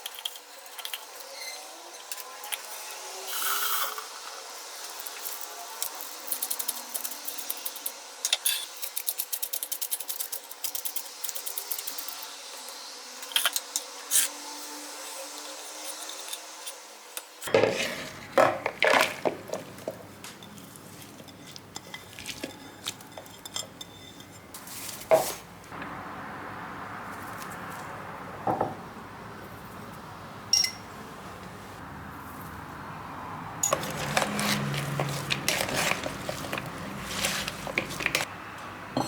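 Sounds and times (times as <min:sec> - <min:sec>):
dishes and cutlery clinking: 0:33.6 - 0:38.3.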